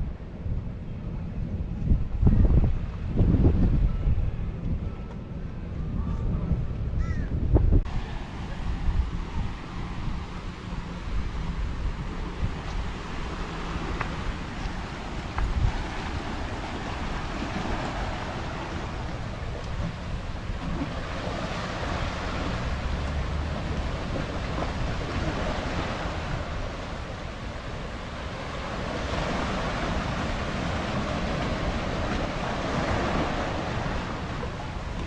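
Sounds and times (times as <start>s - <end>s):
wind buffeting microphone: 0.0s - 35.0s
surf breaking on beach: 7.9s - 35.0s.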